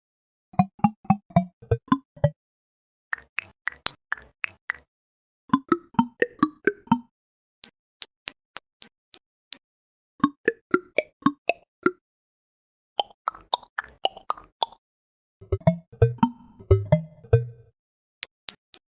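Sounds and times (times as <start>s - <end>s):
plopping water-drop notes: 0.6s - 2.4s, 5.5s - 7.1s, 10.2s - 12.0s, 15.5s - 17.6s.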